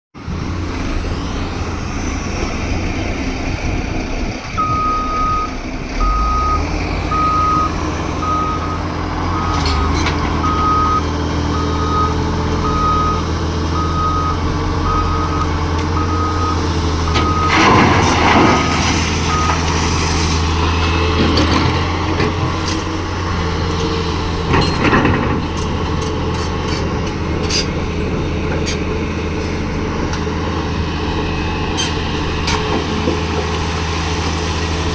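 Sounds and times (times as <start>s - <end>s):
diesel truck engine running: 0.2s - 34.9s
reversing alarm beeping: 4.6s - 18.0s, 19.3s - 19.7s.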